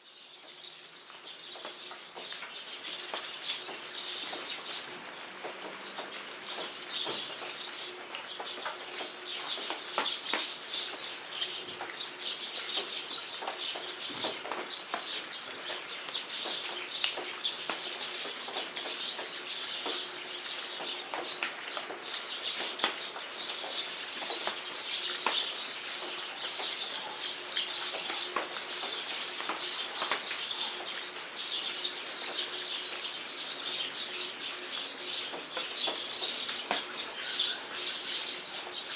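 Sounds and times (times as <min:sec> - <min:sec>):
rain drops ticking: 0:00.0 - 0:38.9
birds chirping: 0:00.1 - 0:38.9.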